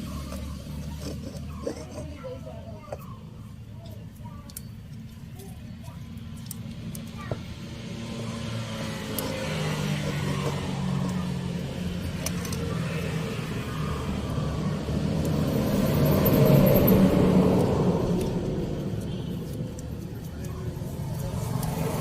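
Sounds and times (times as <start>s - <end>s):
vehicle engine running: 4.9s - 22.0s.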